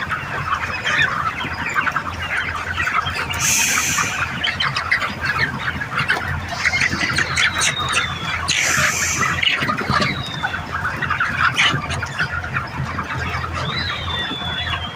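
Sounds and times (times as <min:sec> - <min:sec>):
chickens squawking and clucking: 0:00.0 - 0:14.9
falling whistled calls: 0:03.3 - 0:04.3, 0:06.6 - 0:09.5.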